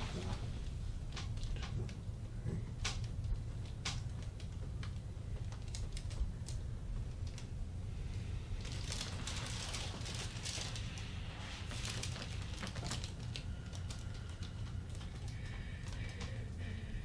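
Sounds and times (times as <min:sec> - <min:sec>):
clothing rustling and crinkling: 0:00.0 - 0:02.1, 0:08.2 - 0:16.0
steady low hum: 0:00.0 - 0:17.0.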